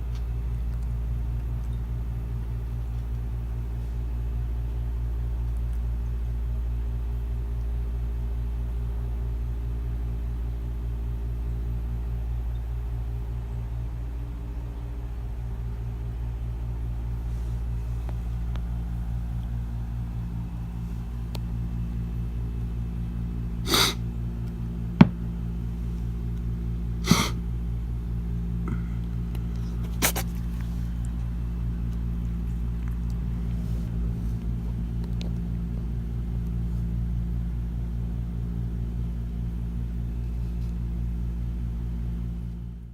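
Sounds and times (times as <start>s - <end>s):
low mechanical hum: 0.0s - 42.9s
cat sneezing: 23.6s - 24.1s, 27.0s - 27.5s, 29.6s - 30.6s.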